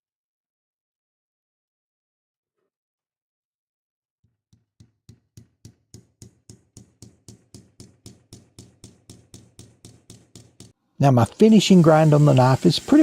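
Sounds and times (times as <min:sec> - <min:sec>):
small hammer tapping on metal: 0:04.5 - 0:10.8.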